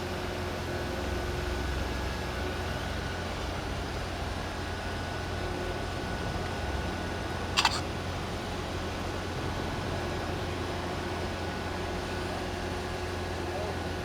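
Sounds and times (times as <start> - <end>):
sharp clicks: 7.6 - 7.8.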